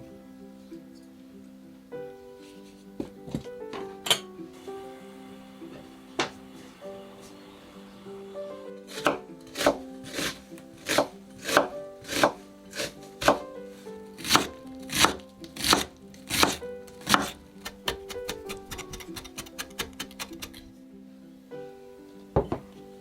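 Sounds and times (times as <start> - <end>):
knife chopping on cutting board: 8.9 - 13.5, 14.2 - 20.6.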